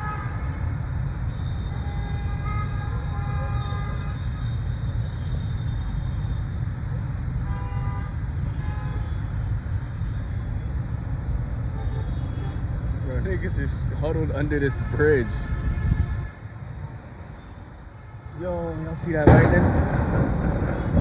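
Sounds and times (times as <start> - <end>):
vehicle horns honking: 0.0 - 6.5, 7.3 - 9.4, 11.7 - 12.7, 14.0 - 16.7, 17.9 - 19.6
rain: 0.0 - 15.2, 16.2 - 21.0
passing traffic: 0.0 - 21.0
storm wind on microphone: 15.5 - 17.0, 19.2 - 21.0.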